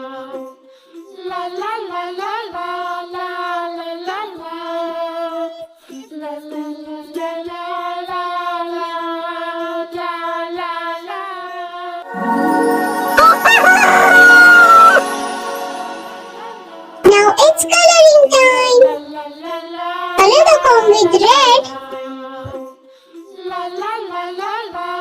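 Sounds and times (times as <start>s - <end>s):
child-like voice singing: 12.1s - 22.7s.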